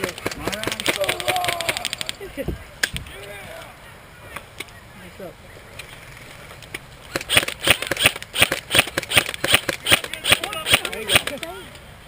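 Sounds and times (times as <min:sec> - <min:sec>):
airsoft rifle shots: 0:00.0 - 0:02.1, 0:07.1 - 0:11.4.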